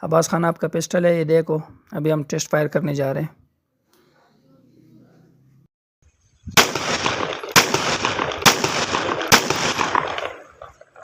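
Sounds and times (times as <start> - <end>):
pistol shots with echo: 6.6 - 10.7.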